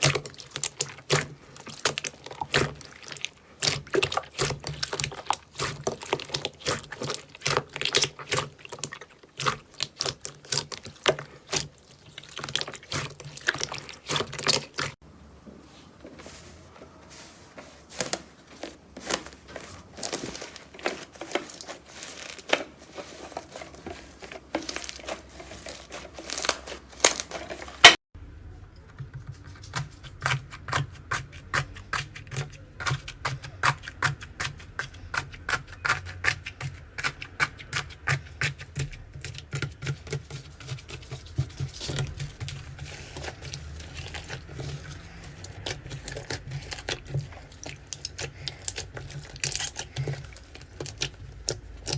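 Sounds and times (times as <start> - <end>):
slime crackling and popping: 0.0 - 15.0, 24.4 - 28.0, 41.8 - 51.9.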